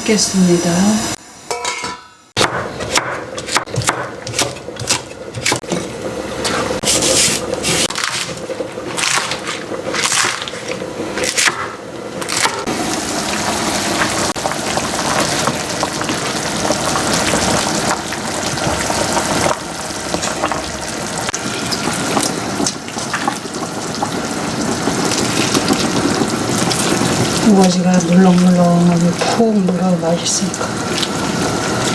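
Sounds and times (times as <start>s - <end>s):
water running: 12.0s - 31.9s.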